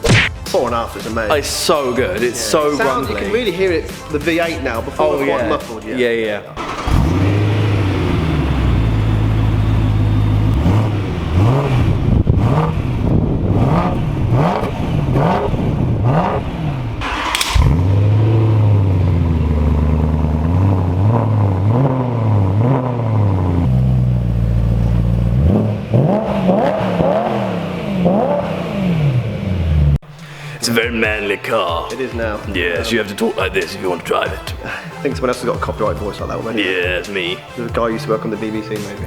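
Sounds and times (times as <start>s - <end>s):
sharp exhaust crack: 6.6s - 28.4s
car engine idling and revving: 6.6s - 30.0s.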